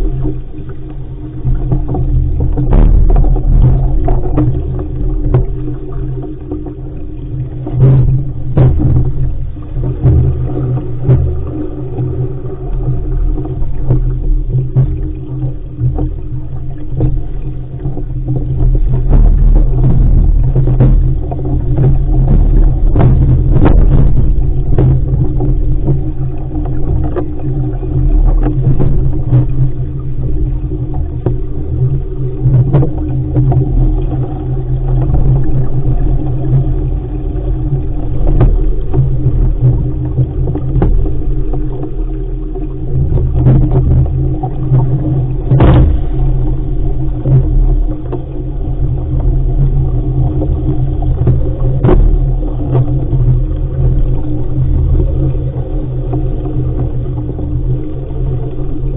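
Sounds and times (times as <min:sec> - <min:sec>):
wind buffeting microphone: 0:18.0 - 0:31.5, 0:43.2 - 0:50.0
sharp knocks: 0:45.5 - 0:46.2.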